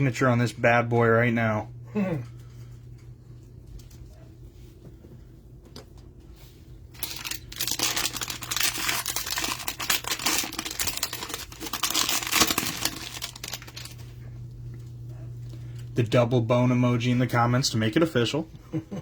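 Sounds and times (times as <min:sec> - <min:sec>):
wrapper crinkling and tearing: 0:06.9 - 0:14.2.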